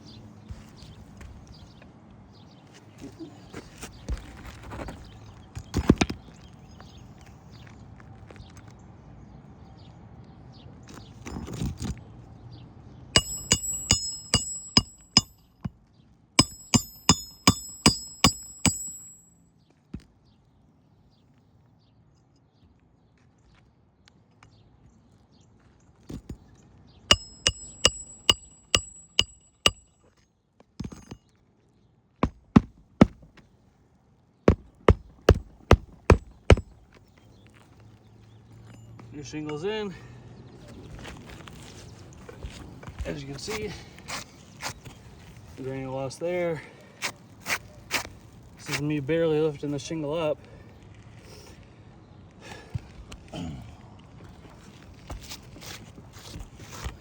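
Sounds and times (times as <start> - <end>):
shingle scraping and handling: 3.5 - 6.4, 32.2 - 33.5, 34.5 - 37.7, 40.7 - 43.5, 54.4 - 57.0
hammer striking roofing nails: 13.2 - 15.4, 16.4 - 19.3, 27.1 - 29.8, 32.2 - 33.4, 34.5 - 36.8.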